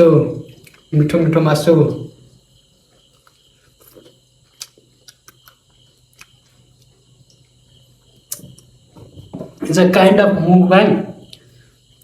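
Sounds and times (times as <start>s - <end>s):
crickets chirping: 0.0s - 12.0s
person chewing food: 3.0s - 8.7s.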